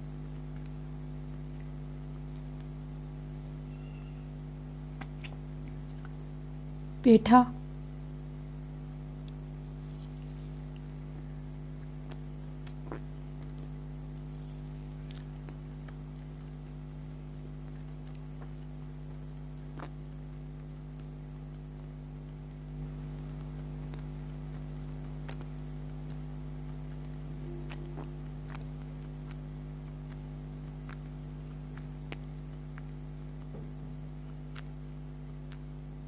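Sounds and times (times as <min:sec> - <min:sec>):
steady electrical hum: 0:00.0 - 0:36.0
wet squishing of eating: 0:09.3 - 0:11.2, 0:11.8 - 0:35.8.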